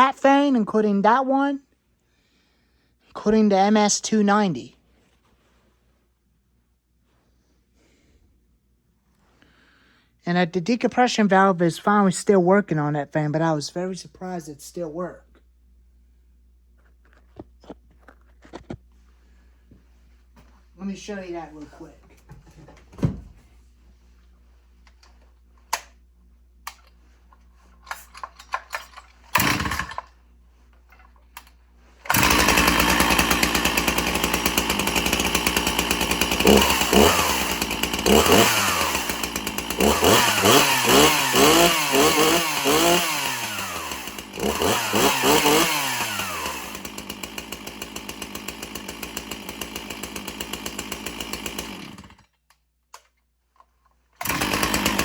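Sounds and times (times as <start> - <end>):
starter cord pull: 27.9 - 30.1, 54.2 - 55.0
chainsaw engine revving and idling: 29.3 - 30.1, 32.1 - 52.3, 54.2 - 55.0.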